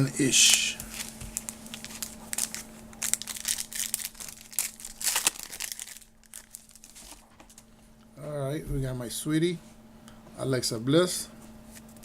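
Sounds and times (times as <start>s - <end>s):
wrapper crinkling and tearing: 0.3s - 7.6s.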